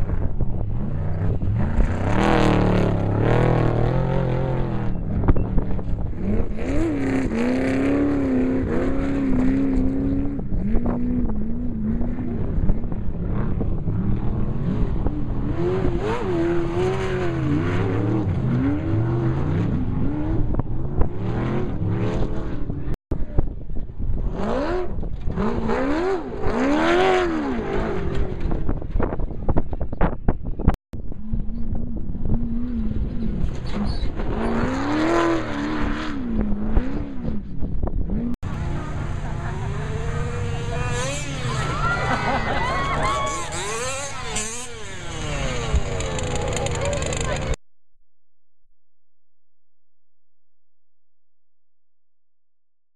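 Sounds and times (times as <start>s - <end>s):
race vehicle engines revving past: 38.2s - 47.6s.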